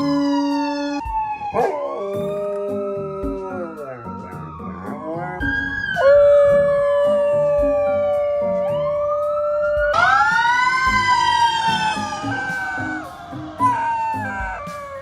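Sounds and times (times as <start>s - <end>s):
dog howling: 0.0s - 4.0s, 6.0s - 8.9s
music beat: 0.0s - 15.0s
police siren wailing: 0.0s - 15.0s.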